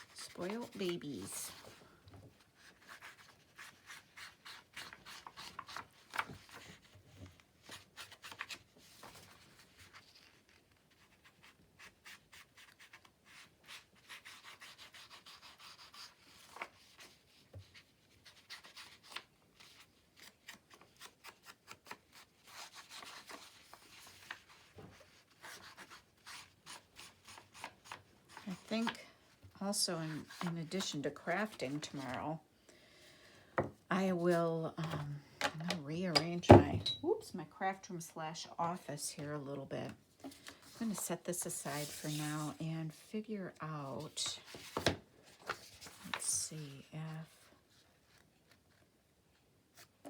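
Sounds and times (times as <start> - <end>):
paper rubbing and rustling: 0.0 - 29.0, 40.4 - 43.1, 44.0 - 46.4.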